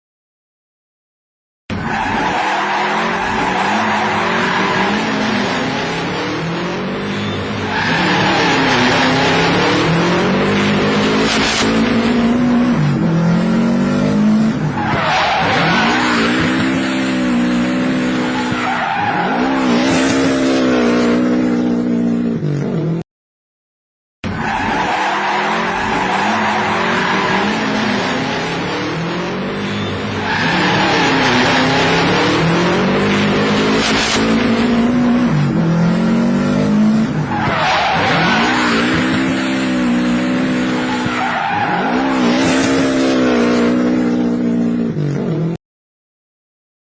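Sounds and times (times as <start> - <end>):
car engine revving: 1.7 - 23.0, 24.4 - 45.6
tyres squealing: 24.3 - 28.0.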